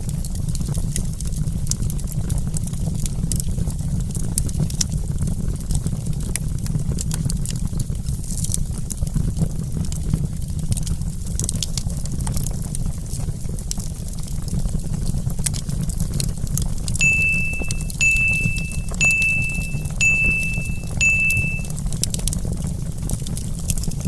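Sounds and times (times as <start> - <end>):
campfire flames rumbling: 0.0 - 16.9
wood crackling and popping: 10.7 - 17.0.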